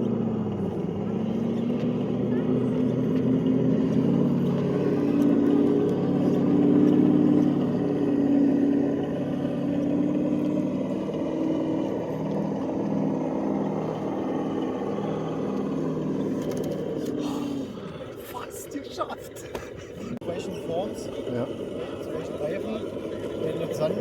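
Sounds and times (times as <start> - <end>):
electric motors whining: 0.0 - 19.0, 20.2 - 24.0.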